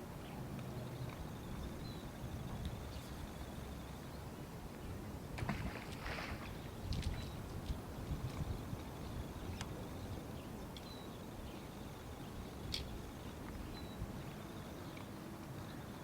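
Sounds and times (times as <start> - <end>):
wind on microphone: 4.8 - 10.4.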